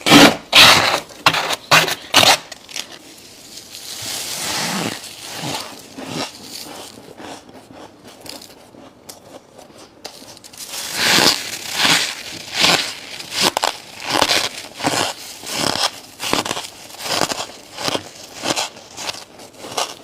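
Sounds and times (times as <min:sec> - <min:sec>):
ice being chewed: 0:02.9 - 0:20.0.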